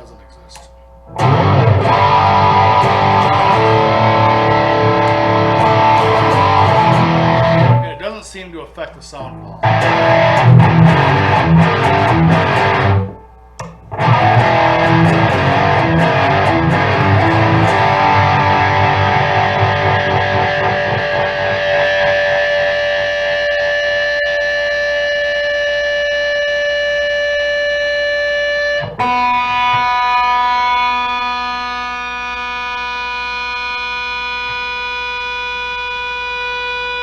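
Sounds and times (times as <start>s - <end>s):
distorted electric guitar: 0.0s - 8.3s, 9.2s - 37.0s.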